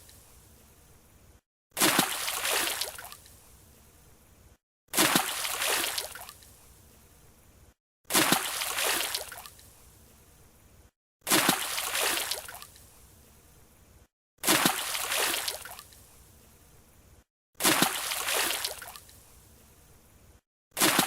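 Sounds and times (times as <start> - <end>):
diver splashing into water: 1.8 - 3.2, 5.0 - 6.3, 8.1 - 9.4, 11.3 - 12.6, 14.4 - 15.8, 17.6 - 18.9, 20.8 - 21.0.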